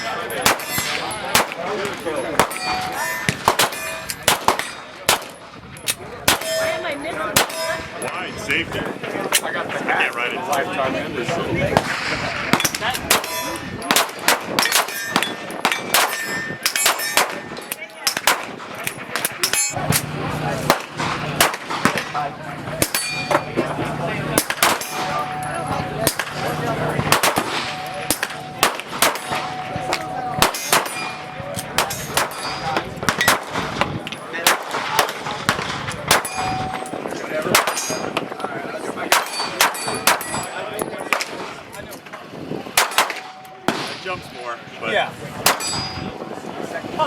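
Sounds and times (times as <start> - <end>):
gunshots: 0.0 - 5.6, 7.3 - 8.0, 11.7 - 23.5, 24.3 - 25.4, 26.0 - 38.1, 39.1 - 40.5, 42.7 - 44.2, 45.4 - 45.9
steel targets clanging: 0.0 - 8.2, 11.9 - 38.4, 39.1 - 41.4, 45.4 - 46.2
steel plates clanging: 14.6 - 18.3, 18.9 - 19.8, 22.8 - 23.7, 24.4 - 33.3, 36.1 - 38.2
handgun shots: 42.8 - 43.9.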